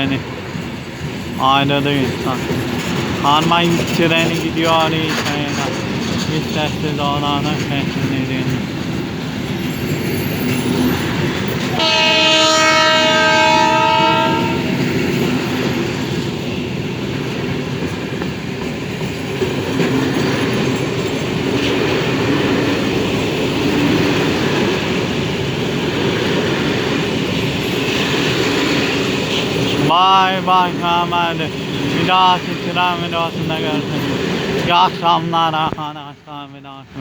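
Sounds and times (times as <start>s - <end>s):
train rumble: 0.0s - 37.0s
locomotive horn: 11.7s - 15.1s.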